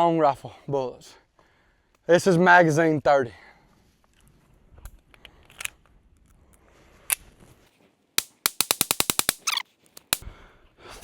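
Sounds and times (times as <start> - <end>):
rifle gunshots: 8.2 - 9.4.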